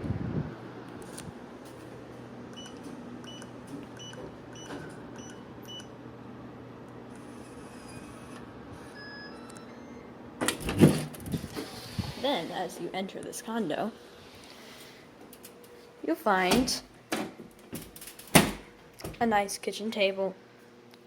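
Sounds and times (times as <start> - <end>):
keypad lock beeping: 2.6 - 5.9.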